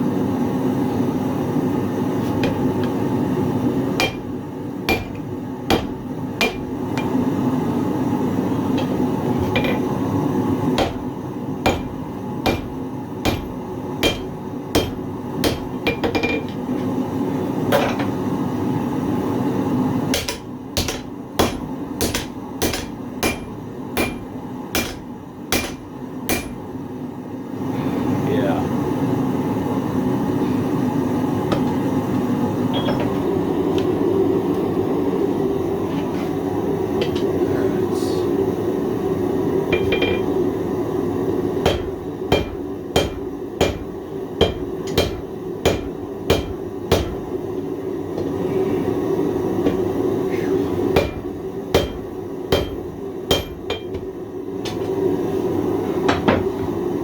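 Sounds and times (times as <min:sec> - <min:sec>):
hammer ringing on anvil: 0:04.0 - 0:04.3, 0:04.9 - 0:07.2, 0:11.7 - 0:12.7, 0:13.3 - 0:16.5, 0:20.2 - 0:26.6, 0:41.7 - 0:47.2, 0:51.0 - 0:51.2, 0:51.8 - 0:54.0.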